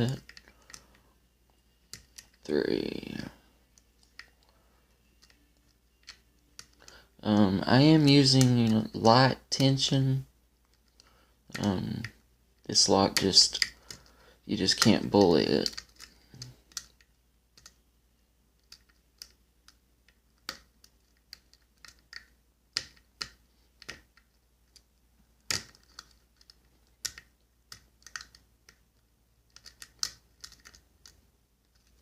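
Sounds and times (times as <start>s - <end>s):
lock pick clicking against pins: 13.1s - 17.0s, 25.5s - 28.8s, 29.5s - 32.0s.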